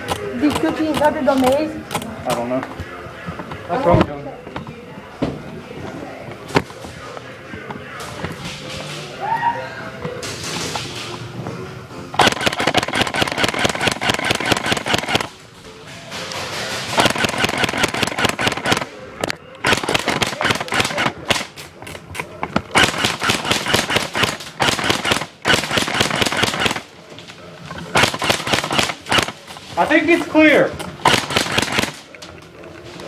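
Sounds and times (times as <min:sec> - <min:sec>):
airsoft gun firing bursts: 0:12.2 - 0:15.3, 0:17.0 - 0:18.9, 0:19.6 - 0:21.6, 0:22.7 - 0:26.9, 0:27.9 - 0:29.4, 0:31.0 - 0:32.1.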